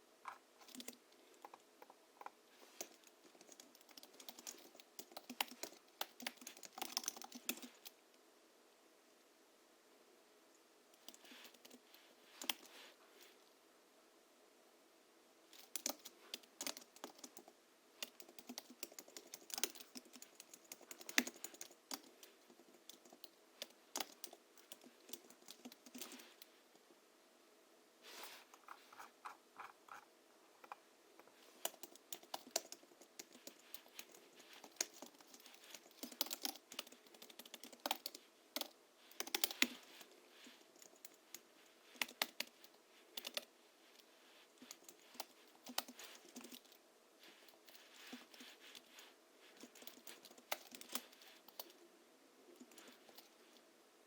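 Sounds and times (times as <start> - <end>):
keyboard typing: 0.3 - 2.0, 2.6 - 8.0, 12.4 - 12.7, 15.6 - 26.5, 31.6 - 40.1, 40.8 - 43.5, 44.6 - 46.8, 49.6 - 51.8.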